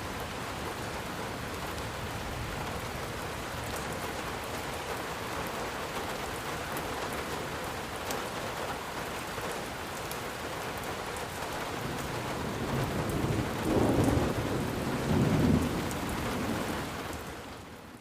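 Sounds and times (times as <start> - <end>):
steady rain falling: 0.0 - 18.0
low rumbles of thunder: 11.8 - 17.3.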